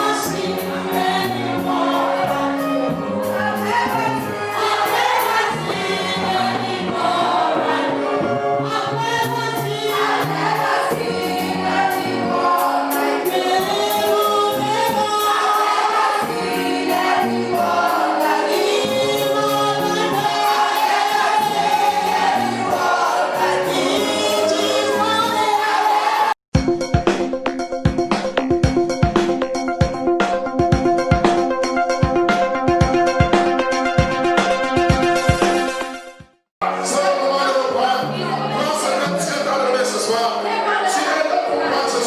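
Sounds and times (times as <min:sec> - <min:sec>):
band accompaniment: 0:00.0 - 0:08.6, 0:09.3 - 0:29.4
choir singing gospel: 0:00.0 - 0:26.4, 0:36.6 - 0:42.0.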